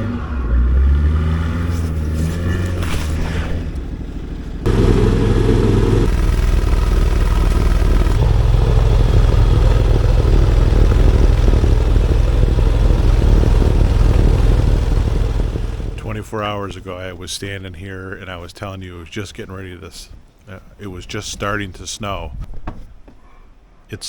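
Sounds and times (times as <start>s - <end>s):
snowblower engine running hard: 4.6s - 16.0s.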